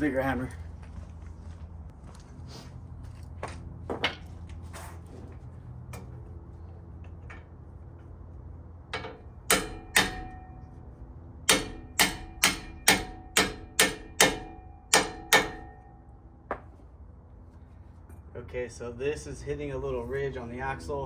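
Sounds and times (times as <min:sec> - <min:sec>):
hammer striking steel socket: 0:09.0 - 0:10.6, 0:11.5 - 0:15.9.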